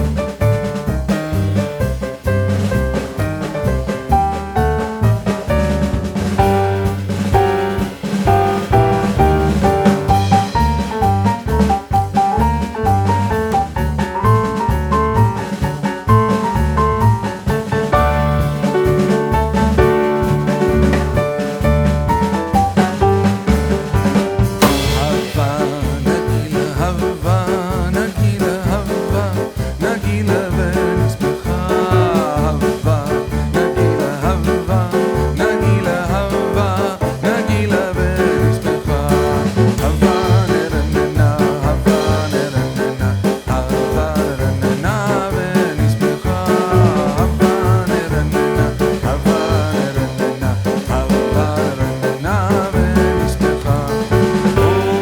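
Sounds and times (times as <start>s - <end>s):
swing-like background music: 0.0s - 55.0s.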